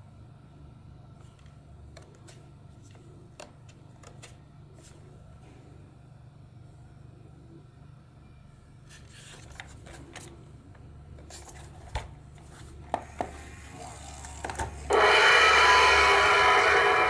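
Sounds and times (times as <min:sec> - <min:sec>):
alarm clock gong ringing: 0:14.9 - 0:17.0.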